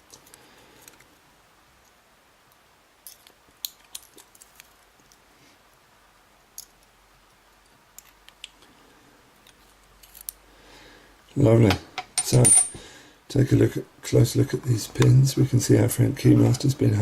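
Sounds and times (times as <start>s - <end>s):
small lock parts clicking: 9.4s - 10.4s.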